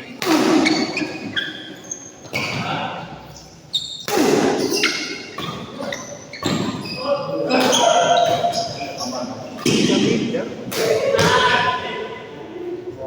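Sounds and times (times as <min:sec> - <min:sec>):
shoes squeaking on court: 0:00.0 - 0:10.2
racket hitting shuttlecock: 0:04.1 - 0:05.6
voices: 0:04.2 - 0:13.0.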